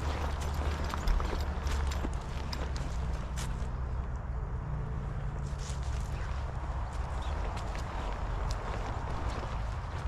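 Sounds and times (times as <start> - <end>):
footsteps on stony ground: 0.0 - 4.1, 5.4 - 10.0.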